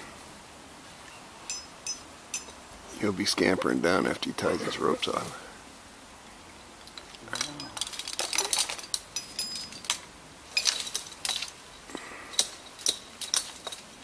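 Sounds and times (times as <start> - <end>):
metallic clinking and jingling: 1.5 - 2.6, 6.9 - 14.0.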